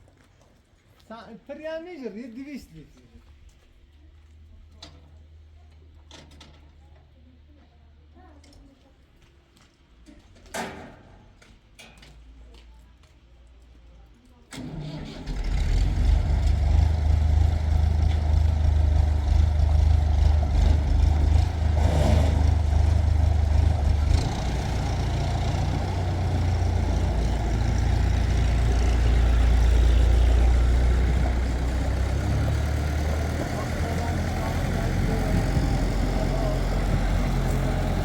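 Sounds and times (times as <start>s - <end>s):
vehicle engine rumbling: 15.2s - 38.0s.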